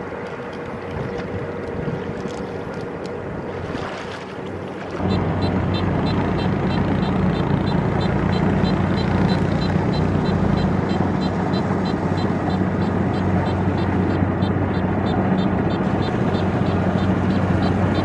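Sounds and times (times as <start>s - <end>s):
wind noise on microphone: 0.7s - 3.8s
combine harvester diesel engine: 5.0s - 18.0s
light regular ticking: 5.0s - 18.0s.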